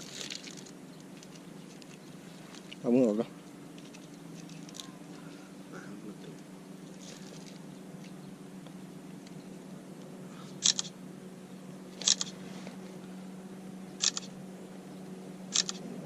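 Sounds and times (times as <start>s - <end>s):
steady low hum: 0.0s - 16.0s
camera shutter clicking: 10.6s - 10.9s, 12.0s - 12.4s, 14.0s - 14.3s, 15.5s - 15.8s.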